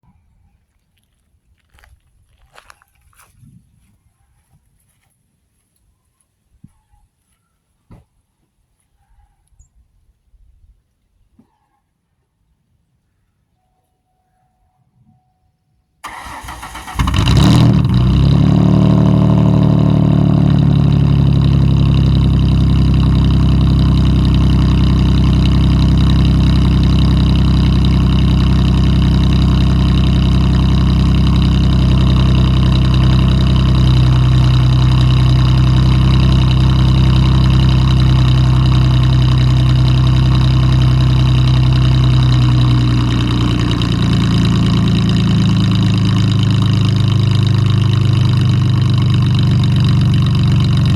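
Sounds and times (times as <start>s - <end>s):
car engine idling loudly: 16.0s - 50.9s
starter cranking: 16.1s - 18.3s.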